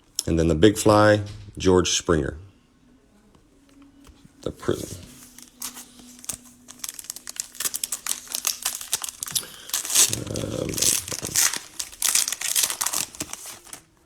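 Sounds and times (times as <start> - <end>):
cellophane wrapper crinkling: 4.4 - 14.0.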